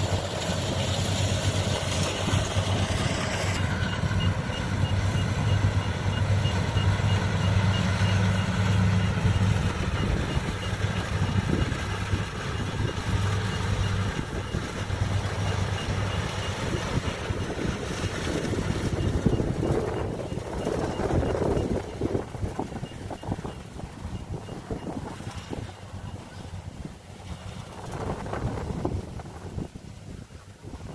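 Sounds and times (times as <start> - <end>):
combine harvester engine running: 0.0 - 30.5
rapid high-pitched beeping: 2.3 - 25.0.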